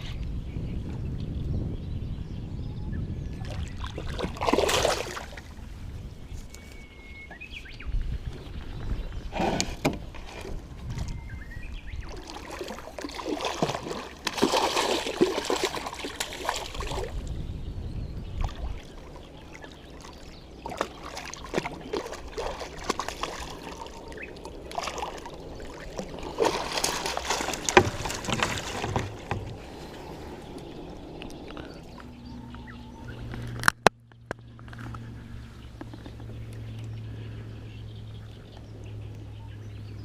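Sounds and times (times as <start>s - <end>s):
water splashing against boat: 3.3s - 6.0s, 8.3s - 17.4s, 18.3s - 33.9s.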